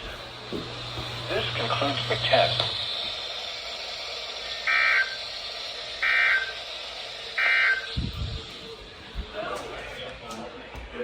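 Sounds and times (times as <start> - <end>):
radio hiss: 1.1 - 9.1
short digital data bursts: 6.0 - 6.6.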